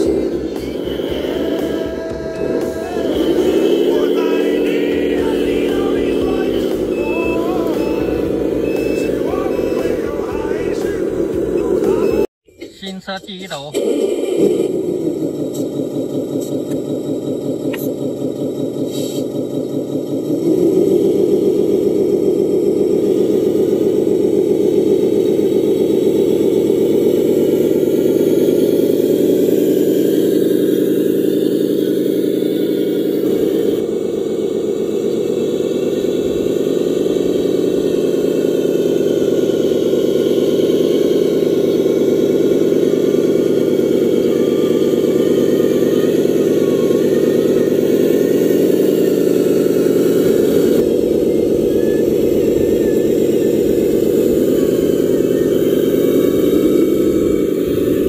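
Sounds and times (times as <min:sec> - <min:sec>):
toy construction vehicle engine running: 0:14.2 - 0:58.0.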